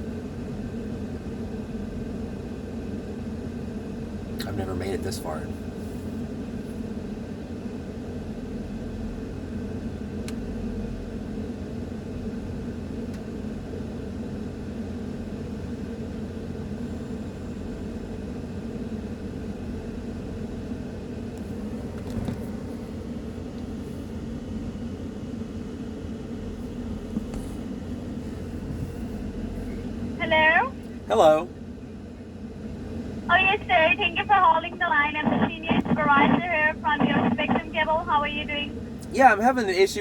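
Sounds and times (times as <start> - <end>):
low rumble and hum: 17.0 - 40.0.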